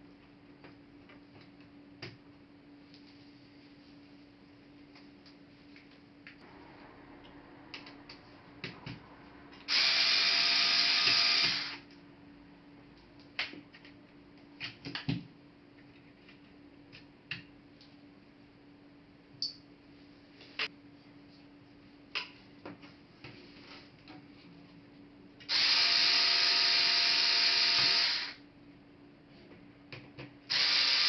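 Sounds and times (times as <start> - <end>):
small electric tool motor: 9.7 - 11.8, 25.5 - 28.4, 30.5 - 31.0.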